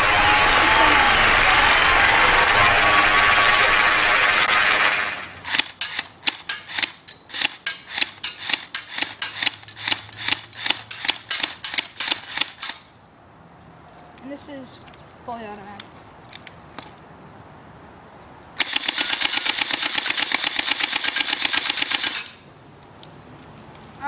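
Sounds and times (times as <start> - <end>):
loud rushing noise: 0.0 - 6.8
airsoft rifle firing: 5.5 - 12.8, 18.6 - 22.4.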